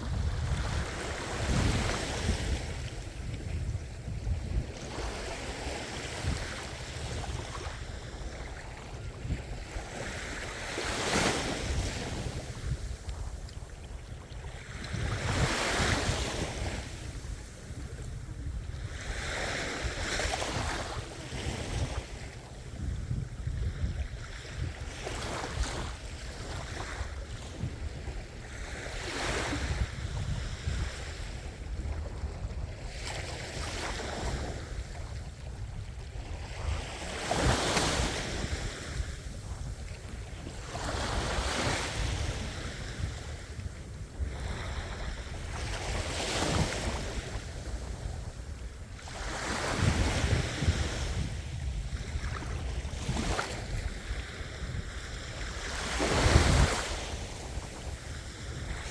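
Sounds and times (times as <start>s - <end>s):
ocean waves breaking: 0.0s - 58.9s
wind buffeting microphone: 0.0s - 58.9s.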